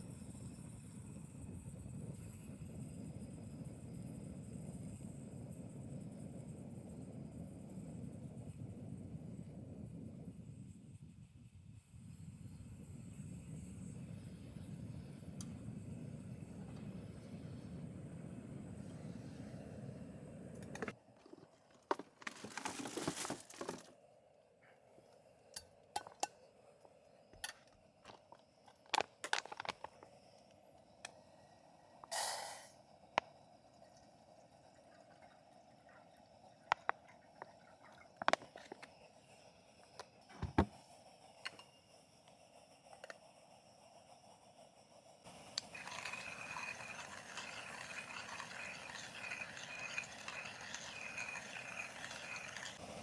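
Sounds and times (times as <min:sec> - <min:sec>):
objects clicking and knocking: 0:20.6 - 0:23.9, 0:27.4 - 0:30.1, 0:38.1 - 0:39.0
dull thump: 0:40.4 - 0:40.8.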